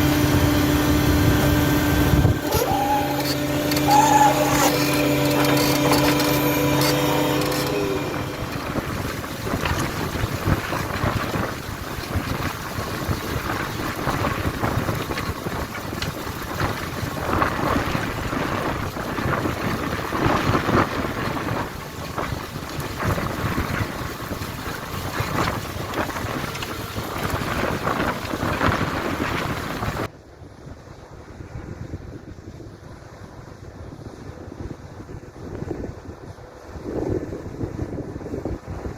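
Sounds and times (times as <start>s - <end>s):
tractor engine hum: 0.0s - 16.4s
wind buffeting microphone: 0.0s - 38.9s.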